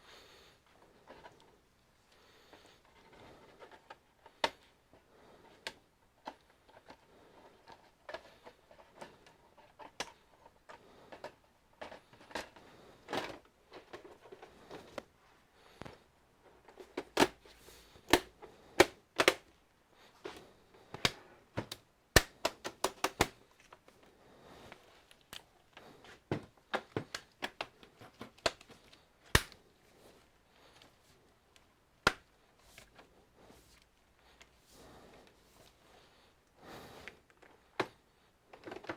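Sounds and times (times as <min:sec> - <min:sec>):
plastic and metal parts clicking: 0:05.4 - 0:15.1, 0:16.6 - 0:19.6, 0:20.2 - 0:24.0, 0:24.7 - 0:29.6, 0:37.0 - 0:38.9.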